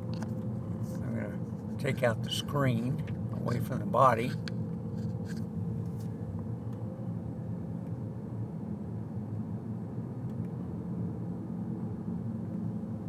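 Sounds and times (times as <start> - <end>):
car driving rumble inside cabin: 0.0 - 6.1.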